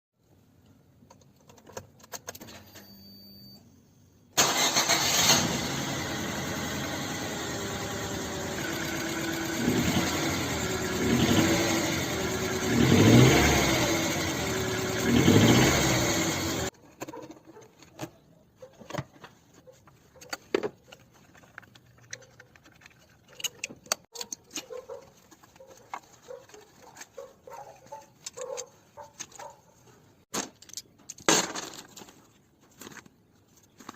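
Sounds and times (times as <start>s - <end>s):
car engine revving with misfire: 4.4s - 16.7s.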